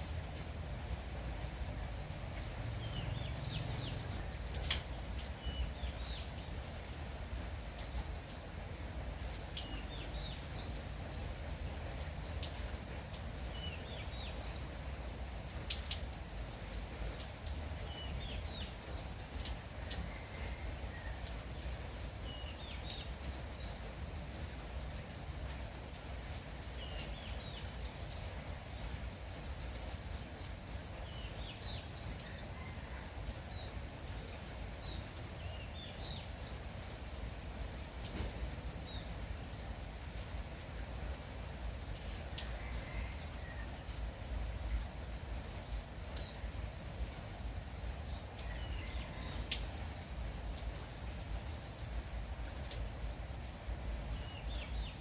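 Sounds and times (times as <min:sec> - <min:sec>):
light rain falling: 0:00.0 - 0:55.0
raindrops ticking: 0:00.0 - 0:55.0
bird chirping: 0:02.4 - 0:04.4.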